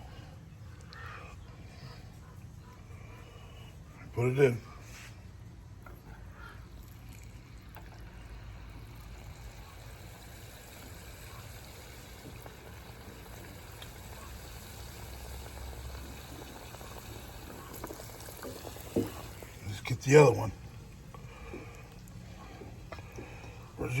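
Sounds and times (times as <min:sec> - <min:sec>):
chicken sizzling in hot oil: 0:08.0 - 0:24.0.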